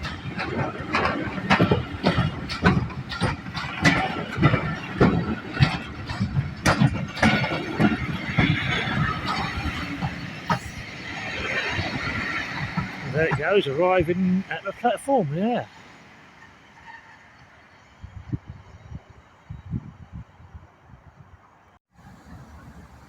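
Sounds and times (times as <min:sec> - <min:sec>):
wheels clicking over rail joints: 0:00.0 - 0:15.0
steam train running past: 0:00.0 - 0:19.6, 0:21.9 - 0:23.0.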